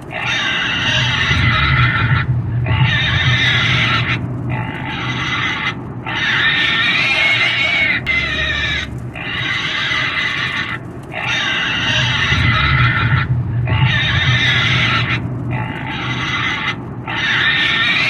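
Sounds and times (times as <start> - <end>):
pig squealing: 0.1 - 18.0.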